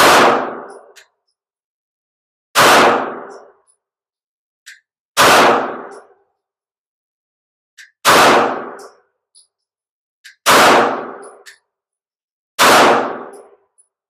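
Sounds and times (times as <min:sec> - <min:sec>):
pistol shots: 0:00.0 - 0:01.0, 0:02.6 - 0:03.5, 0:05.2 - 0:06.2, 0:08.0 - 0:09.0, 0:10.4 - 0:11.6, 0:12.6 - 0:13.6.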